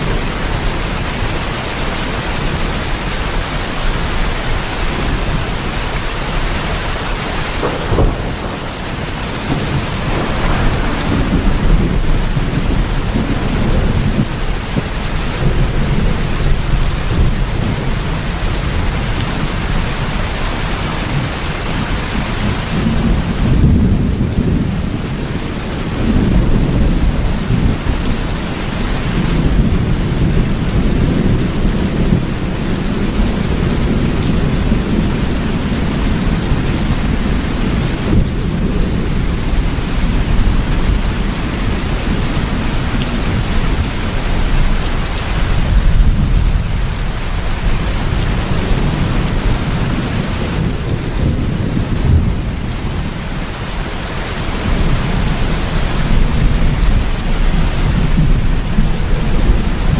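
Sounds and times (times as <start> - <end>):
heavy rain: 0.0 - 59.9
low rumble: 9.9 - 14.4.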